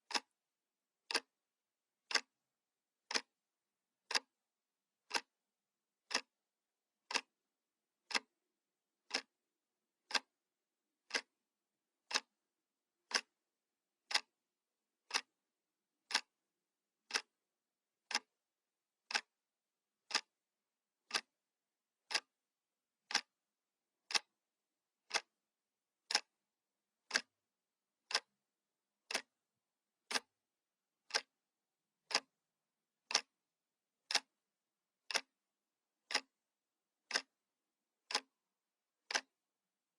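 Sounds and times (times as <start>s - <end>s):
clock ticking: 0.0s - 0.3s, 1.1s - 1.3s, 2.0s - 2.4s, 3.1s - 3.3s, 4.1s - 4.4s, 5.0s - 5.3s, 6.0s - 6.3s, 7.0s - 7.3s, 8.1s - 8.4s, 9.0s - 9.3s, 10.0s - 10.3s, 11.0s - 11.4s, 12.0s - 12.4s, 13.0s - 13.4s, 14.0s - 14.4s, 15.0s - 15.3s, 16.1s - 16.4s, 17.0s - 17.4s, 18.0s - 18.4s, 19.0s - 19.3s, 20.0s - 20.4s, 21.0s - 21.3s, 22.1s - 22.4s, 23.0s - 23.4s, 24.0s - 24.4s, 25.0s - 25.3s, 26.1s - 26.4s, 27.1s - 27.4s, 28.0s - 28.4s, 29.1s - 29.4s, 30.1s - 30.3s, 31.0s - 31.4s, 32.0s - 32.4s, 33.1s - 33.4s, 34.1s - 34.4s, 35.1s - 35.4s, 36.1s - 36.4s, 37.0s - 37.4s, 38.0s - 38.4s, 39.0s - 39.4s.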